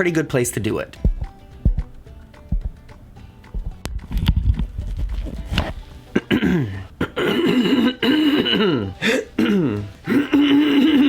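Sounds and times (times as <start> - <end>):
person clearing their throat: 6.2 - 11.0.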